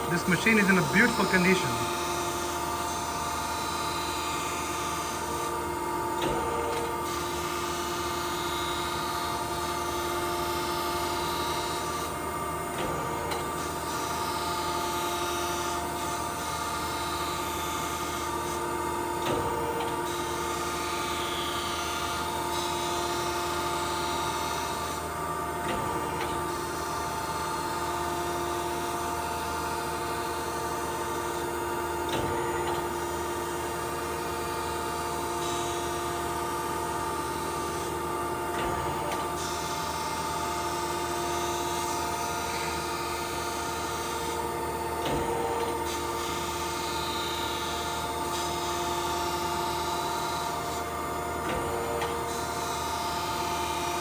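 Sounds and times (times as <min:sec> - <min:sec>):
grinder spindle whine: 0:00.0 - 0:06.0.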